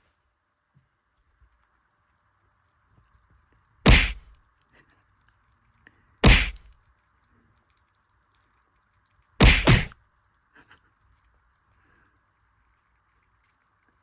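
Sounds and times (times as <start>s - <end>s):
faint steady hiss: 0.0s - 14.0s
whack sound effects: 3.9s - 4.2s, 6.2s - 6.6s, 9.4s - 9.9s.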